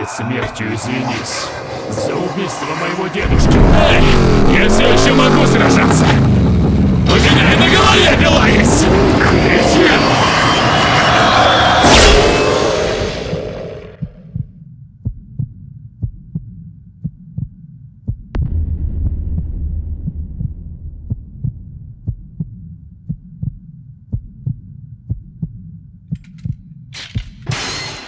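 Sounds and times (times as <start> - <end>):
sharp noises: 0.0 - 14.1
low rumble: 0.4 - 14.2, 18.4 - 23.2
heartbeat thumps: 13.9 - 26.6.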